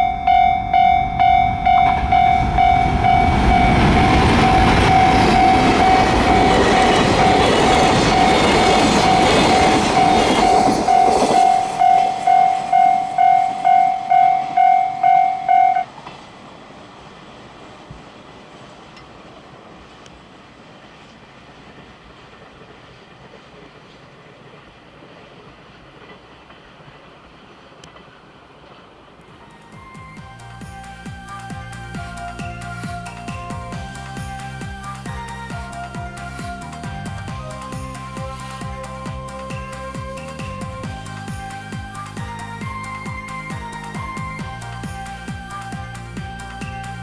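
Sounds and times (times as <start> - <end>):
crossing warning bell ringing: 0.0 - 16.0, 29.4 - 47.0
train wheels on rails: 0.0 - 47.0.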